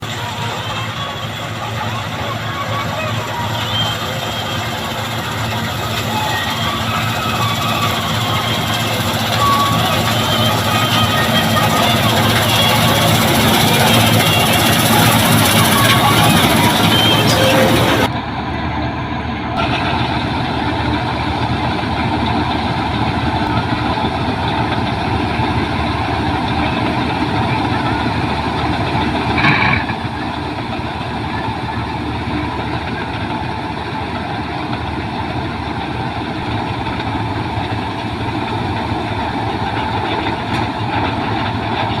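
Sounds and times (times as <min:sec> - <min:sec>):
combine harvester running: 0:00.0 - 0:42.0.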